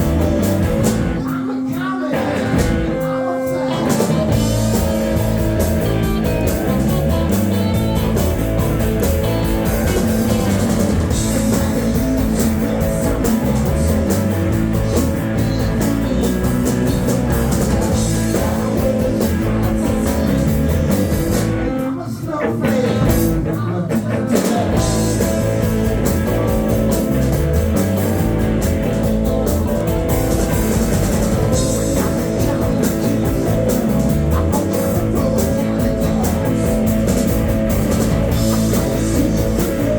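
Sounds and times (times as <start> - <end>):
drum kit: 0.0 - 39.9
electric guitars: 0.0 - 39.9.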